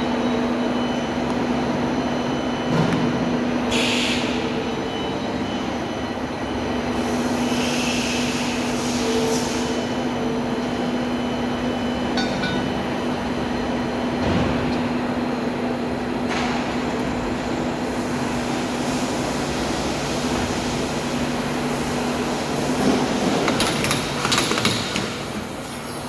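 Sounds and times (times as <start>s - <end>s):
hiss: 3.7s - 4.4s.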